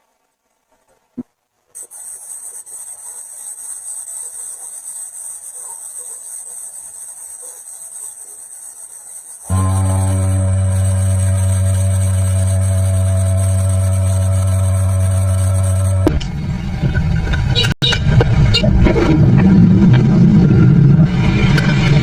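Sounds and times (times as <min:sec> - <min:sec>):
high-pitched hiss: 0:00.0 - 0:16.2
music: 0:09.5 - 0:16.3.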